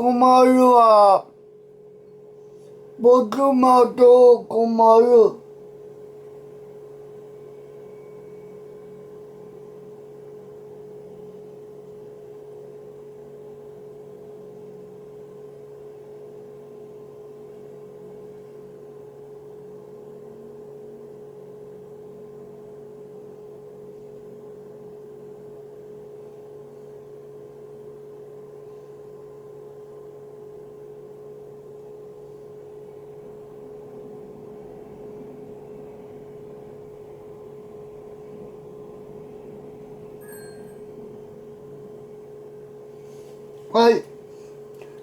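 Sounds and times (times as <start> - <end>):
mid-pitched hum: 0.0 - 45.0
low drone: 33.0 - 42.8.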